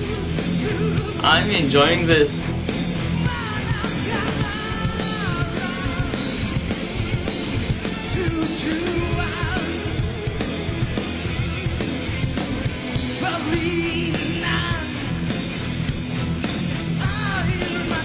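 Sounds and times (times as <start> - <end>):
drums: 0.0 - 18.0
electric guitar: 0.0 - 18.0.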